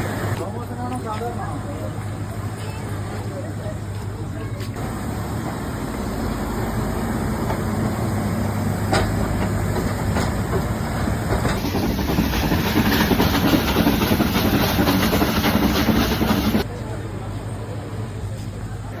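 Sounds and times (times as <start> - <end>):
train wheels rumbling on rails: 0.0 - 19.0
hiss: 4.8 - 16.7.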